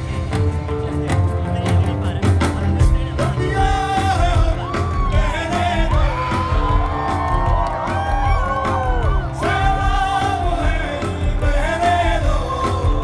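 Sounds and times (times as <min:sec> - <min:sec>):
live rock band playing: 0:00.0 - 0:13.0
person singing: 0:02.9 - 0:13.0.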